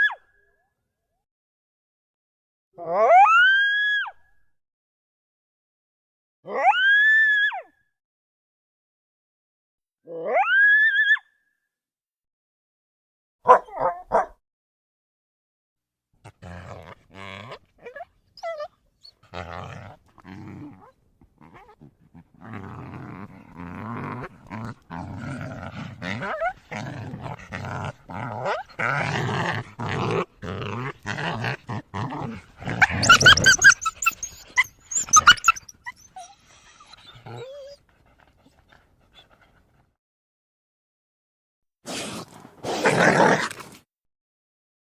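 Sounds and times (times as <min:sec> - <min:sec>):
coyotes calling: 0:32.8 - 0:36.4.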